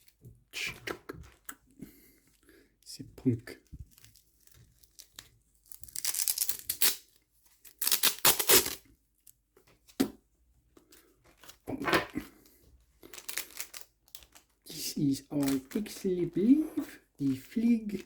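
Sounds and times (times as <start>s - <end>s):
packaging tearing and rustling: 3.9s - 8.8s, 13.1s - 14.6s.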